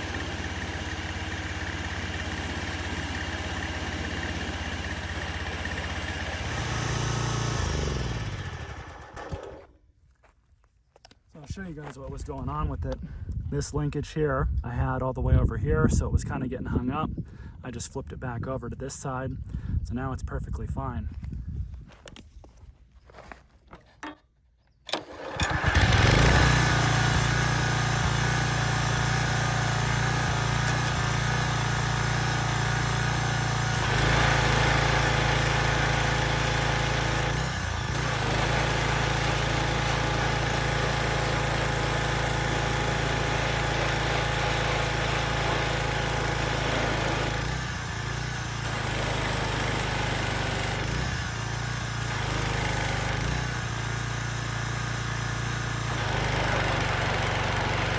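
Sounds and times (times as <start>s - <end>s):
small engine running: 0.0s - 9.8s, 24.9s - 57.9s.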